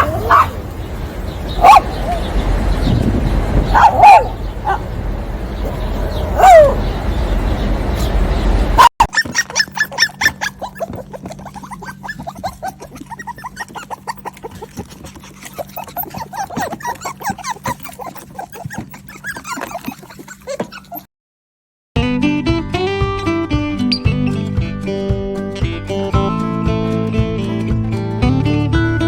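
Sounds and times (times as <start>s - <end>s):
rumbling background: 0.0s - 8.8s
animal squeaks and chirps: 9.1s - 21.0s.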